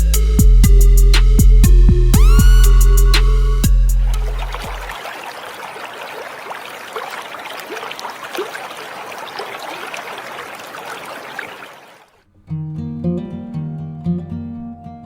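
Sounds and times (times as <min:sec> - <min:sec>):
water trickling and gurgling: 0:04.1 - 0:12.2.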